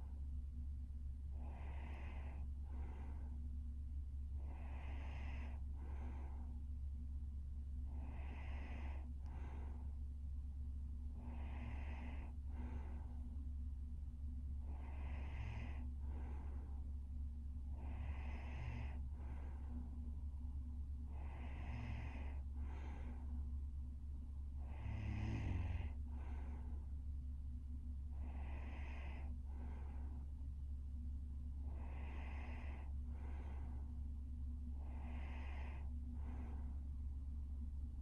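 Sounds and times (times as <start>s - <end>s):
steady low hum: 0.0s - 38.0s
woman snoring: 4.5s - 5.6s, 7.9s - 9.0s, 11.2s - 12.4s, 14.8s - 15.9s, 17.7s - 19.0s, 21.2s - 23.0s, 24.6s - 26.5s, 28.2s - 30.0s, 31.7s - 33.6s, 34.8s - 35.9s.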